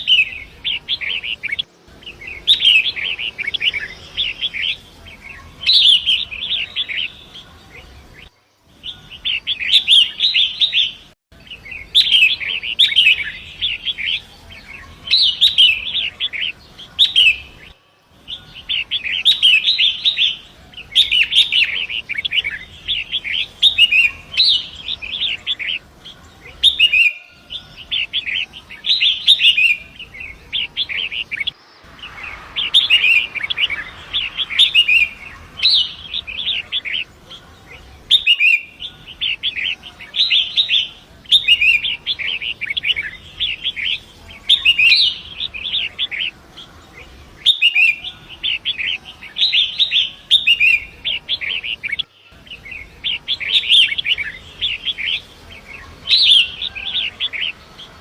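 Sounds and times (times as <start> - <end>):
bird chattering song: 0.0 - 58.0
river water rushing: 31.5 - 37.0.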